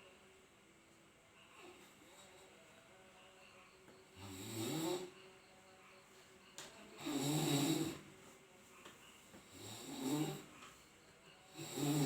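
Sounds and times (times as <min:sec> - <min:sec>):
quiet breathing: 0:00.9 - 0:12.0
person snoring loudly: 0:04.2 - 0:05.1, 0:07.0 - 0:08.0, 0:09.5 - 0:10.5, 0:11.5 - 0:12.0.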